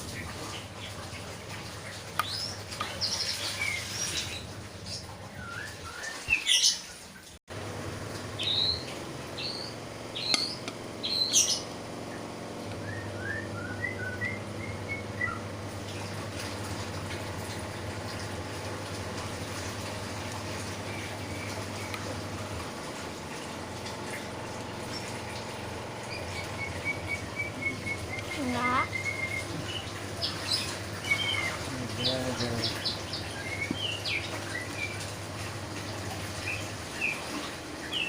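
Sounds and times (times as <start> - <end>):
steady low hum: 7.5 - 38.0
bird chirping: 8.4 - 11.7, 26.0 - 35.0.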